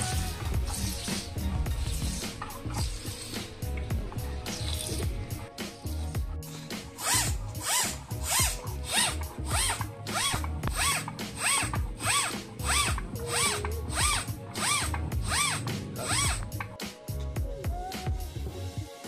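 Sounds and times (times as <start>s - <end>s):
bicycle hand pump squeaky whoosh: 0.0s - 3.6s, 6.4s - 16.6s.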